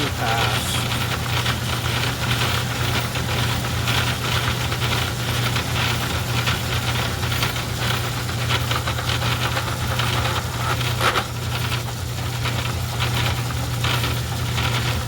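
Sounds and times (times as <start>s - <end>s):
metal lathe running: 0.0s - 11.8s.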